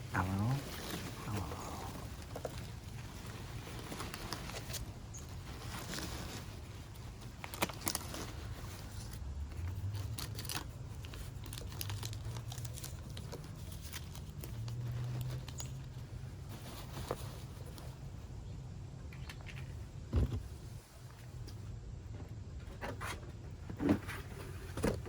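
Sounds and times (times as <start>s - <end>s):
packaging crinkling and tearing: 0.1s - 17.8s.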